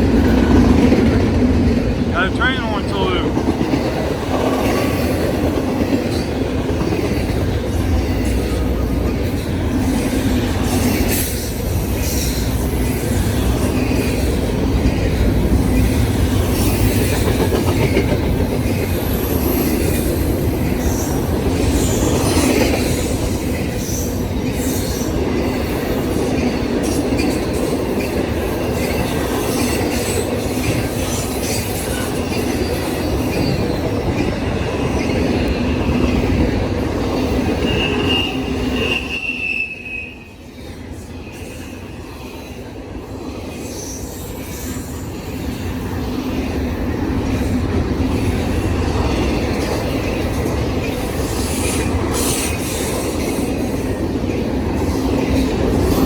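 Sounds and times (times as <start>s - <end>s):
freight train rumbling past: 0.0s - 39.2s.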